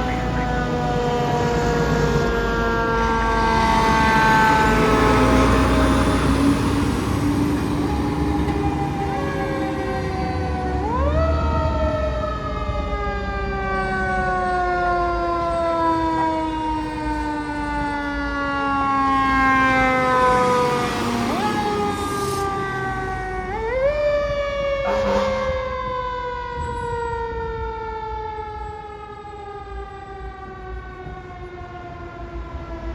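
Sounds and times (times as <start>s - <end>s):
fire truck siren wailing: 0.0s - 32.9s
low vehicle rumble: 0.0s - 32.9s.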